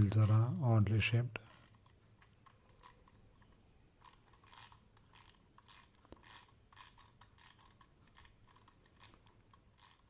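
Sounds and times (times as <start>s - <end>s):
wind-up toy clockwork rasping: 1.4s - 2.0s, 4.0s - 10.0s.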